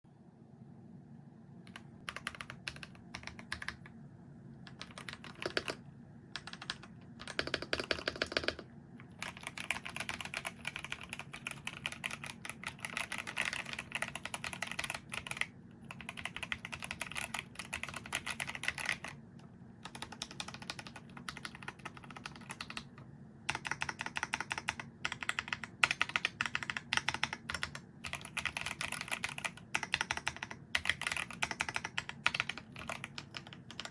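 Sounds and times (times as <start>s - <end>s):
mechanical keyboard typing: 1.7s - 3.9s, 4.7s - 5.8s, 6.4s - 19.2s, 19.8s - 33.9s.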